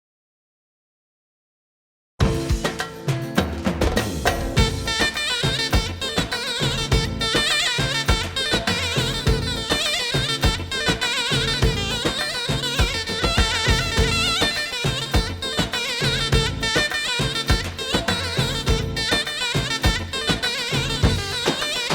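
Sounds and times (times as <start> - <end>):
steady drum beat: 2.2 - 21.9
reedy wavering zurna melody: 4.6 - 21.9.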